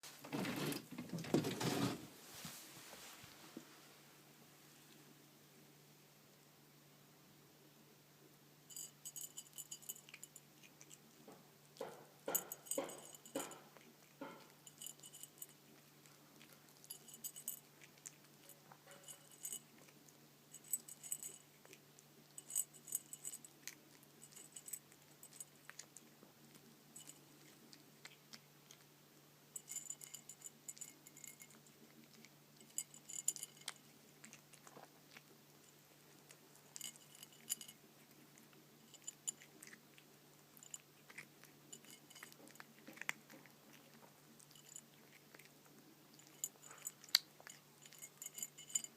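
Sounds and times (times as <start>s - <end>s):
light ringing clinks: 8.7s - 11.0s, 11.8s - 19.9s, 20.5s - 21.7s, 22.3s - 25.9s, 29.6s - 34.4s, 36.6s - 37.8s, 38.4s - 39.8s, 40.6s - 43.8s, 44.4s - 45.5s, 46.1s - 48.9s
cat crunching dry kibble: 8.8s - 48.9s.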